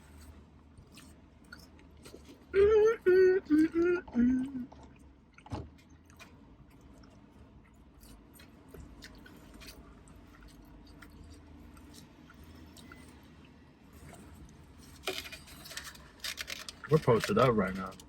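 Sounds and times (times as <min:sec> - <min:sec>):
faint chewing of food: 0:00.0 - 0:02.6, 0:04.0 - 0:18.0.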